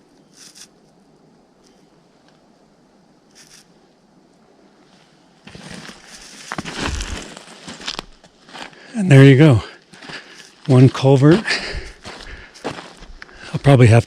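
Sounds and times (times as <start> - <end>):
low outdoor background: 0.0 - 14.0
crunching and scraping: 5.4 - 8.9, 9.9 - 13.5.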